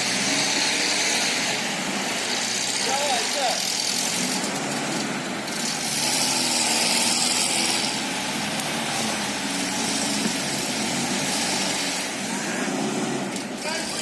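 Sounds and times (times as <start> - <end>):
van engine running: 0.0 - 14.0.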